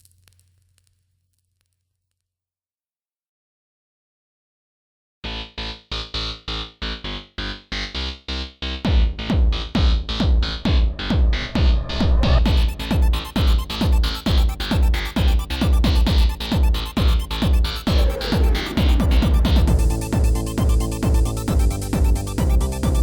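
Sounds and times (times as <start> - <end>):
heavy bass drum: 8.8 - 23.0
synthesizer pulse: 8.8 - 23.0.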